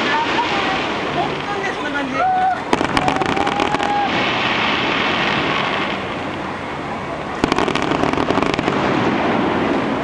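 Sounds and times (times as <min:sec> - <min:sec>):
fireworks bursts: 0:00.0 - 0:10.0.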